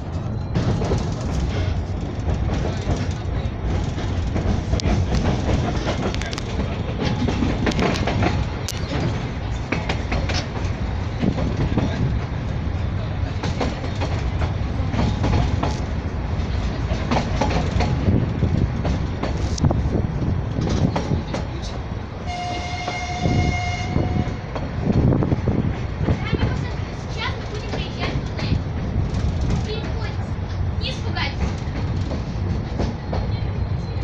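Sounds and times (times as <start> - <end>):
train wheels rumbling on rail: 0.0 - 34.0
train horn: 22.2 - 24.4.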